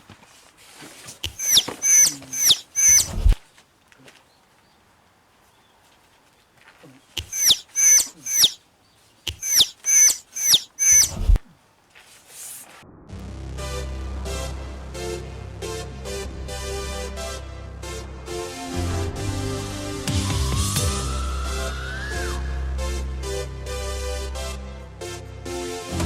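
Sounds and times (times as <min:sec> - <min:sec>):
bird shrill cries: 0:01.3 - 0:03.3, 0:07.2 - 0:08.6, 0:09.3 - 0:11.4.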